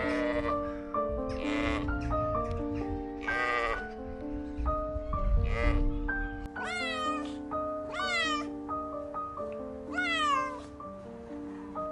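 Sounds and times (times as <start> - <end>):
cat meowing: 0.0 - 0.6, 1.3 - 2.4, 3.2 - 3.9, 5.2 - 8.7, 9.9 - 10.8
music with sustained notes: 0.0 - 11.9
low rumble: 1.9 - 3.2.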